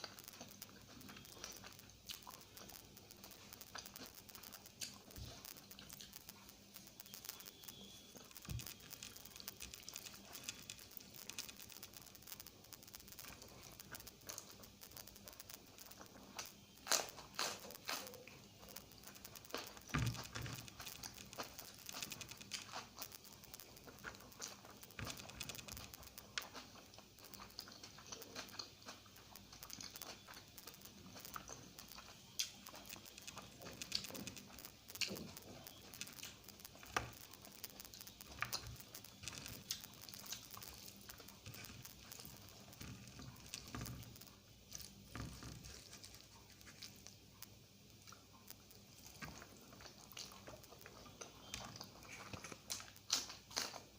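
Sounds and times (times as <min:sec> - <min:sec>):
chewing: 0:00.0 - 0:53.9
mouth clicks and smacks: 0:00.0 - 0:53.9.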